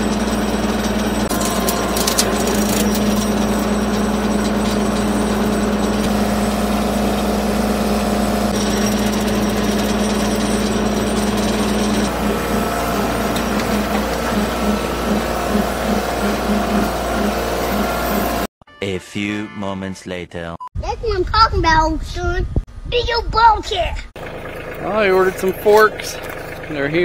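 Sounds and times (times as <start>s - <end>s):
diesel tractor engine running: 0.0s - 18.5s, 24.2s - 27.0s.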